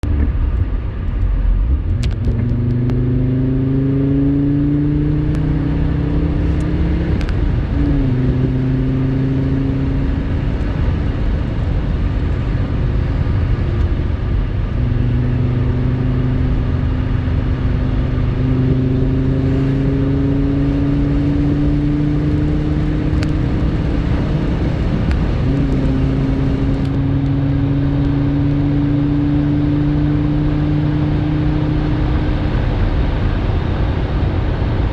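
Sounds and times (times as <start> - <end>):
car engine accelerating: 0.0 - 34.9.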